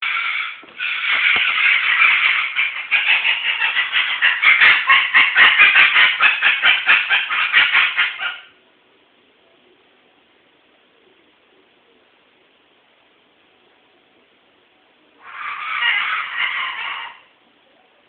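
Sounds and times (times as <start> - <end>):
cockatoo screeching: 0.0 - 8.6, 15.2 - 17.4.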